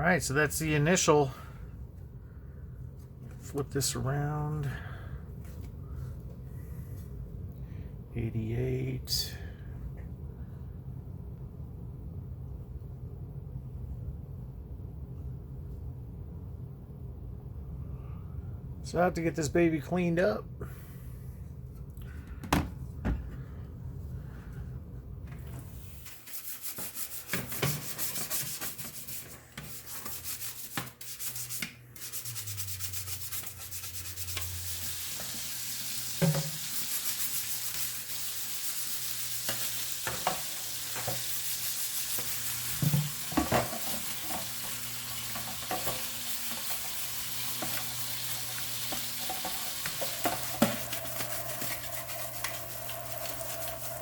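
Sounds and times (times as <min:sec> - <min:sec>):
scrubbing hiss: 0:26.0 - 0:54.0.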